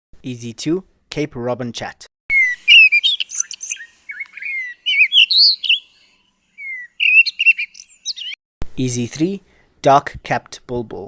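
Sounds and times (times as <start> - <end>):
bird singing whistled phrases: 2.3 - 8.4.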